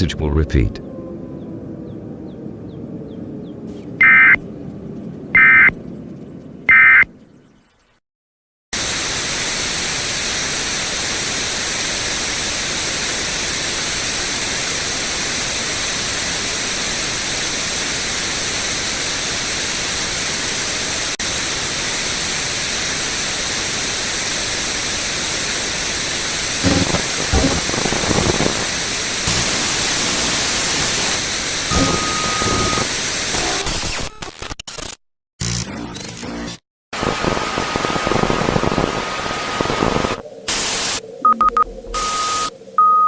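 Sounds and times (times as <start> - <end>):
loud static hiss: 8.8 - 34.5, 37.0 - 41.2
low bursts: 26.0 - 33.0.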